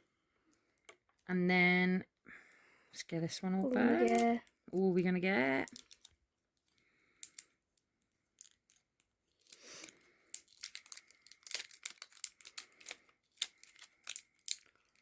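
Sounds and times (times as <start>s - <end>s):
packaging rustles and clicks: 9.3s - 15.0s
packaging tearing and crinkling: 10.4s - 15.0s.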